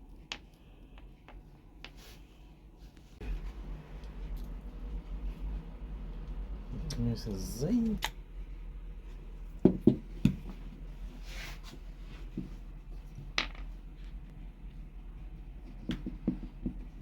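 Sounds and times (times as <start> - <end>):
tools knocking on workbench: 9.6 - 10.4.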